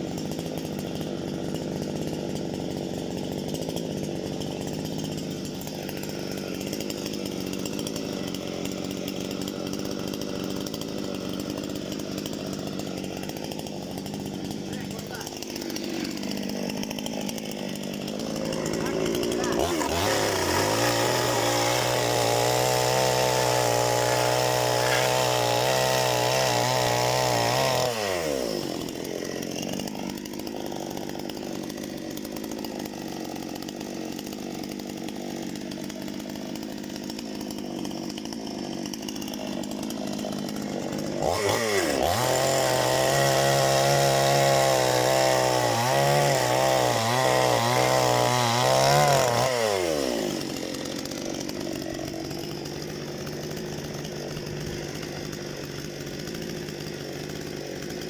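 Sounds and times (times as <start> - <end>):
chainsaw revving and idling: 0.0 - 58.0.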